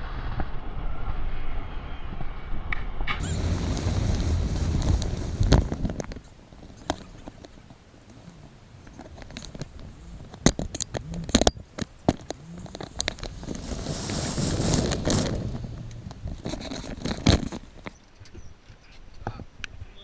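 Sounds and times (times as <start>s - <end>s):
sharp clicks and knocks: 3.2s - 13.7s, 14.7s - 18.0s
car noise: 3.2s - 18.0s.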